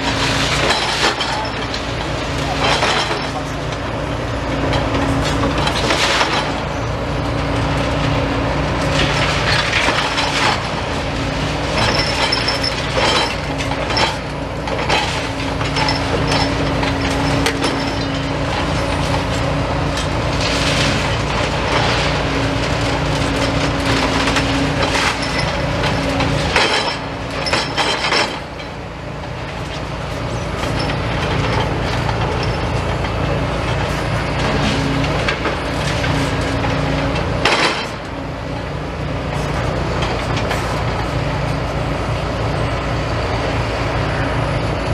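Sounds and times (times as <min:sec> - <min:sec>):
excavator engines running: 0:00.0 - 0:44.9
wood and rubble crunching: 0:08.8 - 0:42.1.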